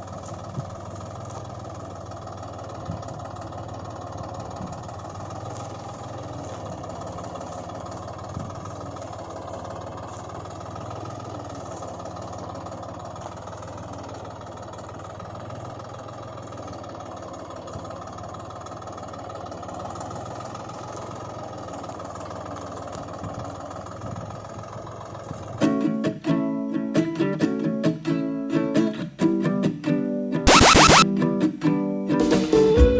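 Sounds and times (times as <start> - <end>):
tractor engine idling: 0.8 - 21.7.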